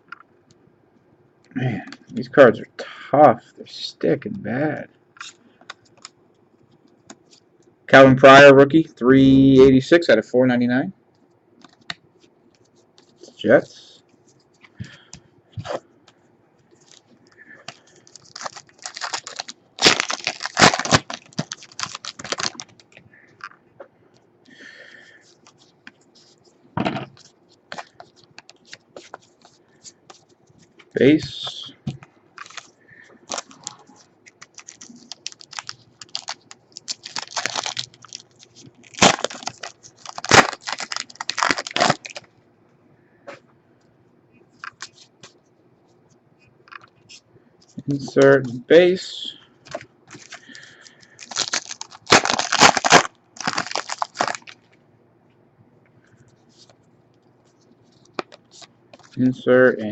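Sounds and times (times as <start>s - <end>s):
cards rustling: 16.7s - 23.6s, 25.0s - 42.3s, 44.6s - 45.4s, 49.6s - 54.7s, 57.4s - 59.2s
foil pack tearing and crinkling: 17.7s - 22.8s, 32.4s - 33.6s, 34.3s - 42.3s, 49.7s - 54.6s
cards flipping: 31.9s - 32.7s.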